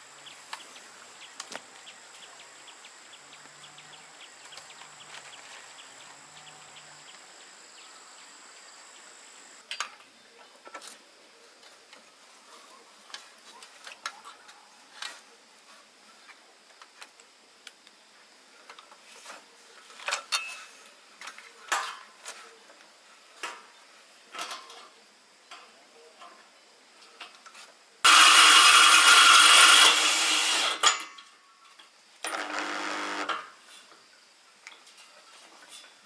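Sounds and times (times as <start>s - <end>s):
power tool whining: 28.1s - 31.0s, 32.3s - 33.4s.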